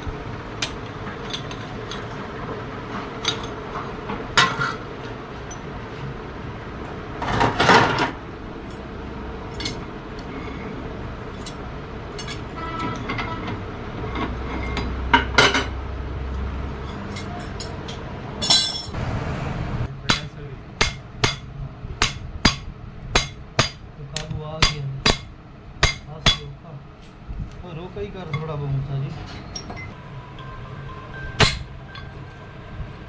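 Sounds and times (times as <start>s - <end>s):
metal tools clinking: 3.2s - 3.6s, 9.5s - 15.7s, 16.8s - 19.0s, 28.3s - 30.0s
hammer strikes on metal: 20.1s - 26.5s, 31.4s - 32.1s.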